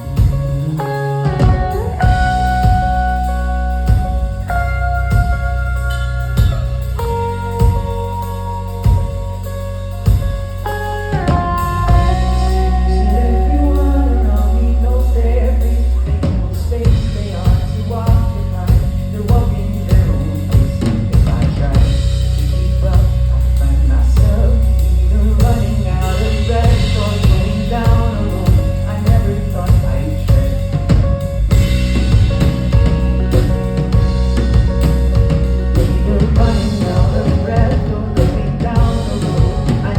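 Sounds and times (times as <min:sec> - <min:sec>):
bass and melody: 0:00.0 - 0:39.9
drum kit beat: 0:00.0 - 0:39.9
person singing: 0:10.7 - 0:39.9.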